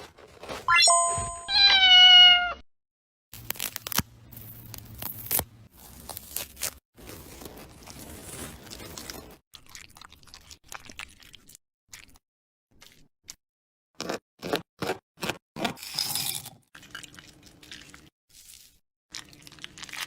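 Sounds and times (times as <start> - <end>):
cat meowing: 0.7 - 2.6.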